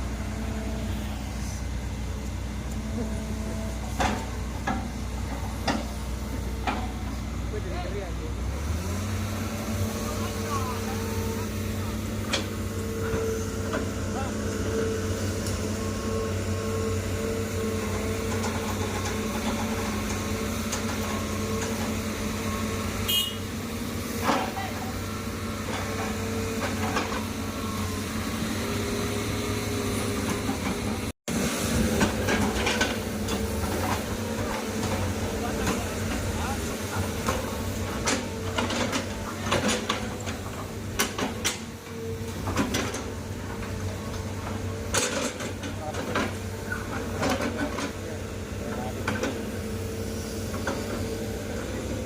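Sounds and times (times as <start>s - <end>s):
excavator diesel engine running: 0.0s - 52.0s.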